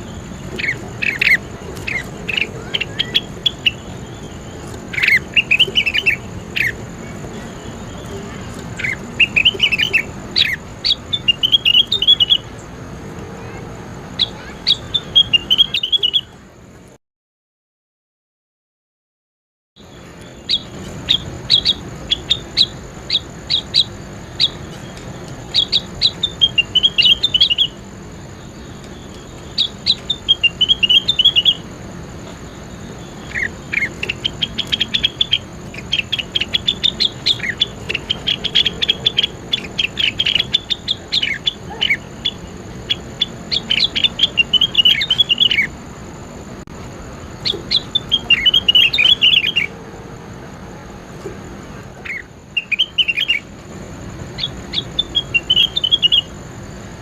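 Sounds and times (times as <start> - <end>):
faint high whine: 0.0 - 17.0, 19.8 - 57.0
songbird chirping: 0.0 - 17.0, 19.8 - 57.0.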